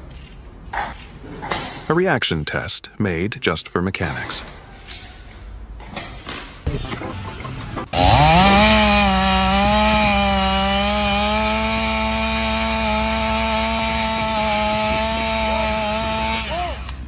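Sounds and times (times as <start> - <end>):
small engine revving: 7.9 - 17.0.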